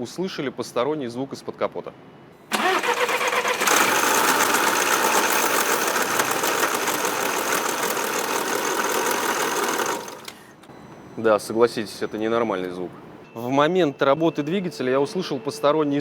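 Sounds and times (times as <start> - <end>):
car engine running: 2.5 - 10.3
rattling crackling accessory noise: 2.5 - 10.4.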